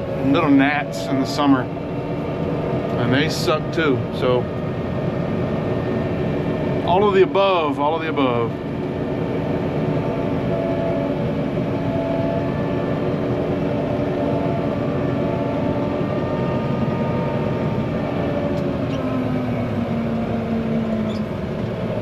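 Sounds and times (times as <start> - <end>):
slow-moving vehicle running: 0.0 - 22.0
mosquito fogger operating: 9.4 - 22.0.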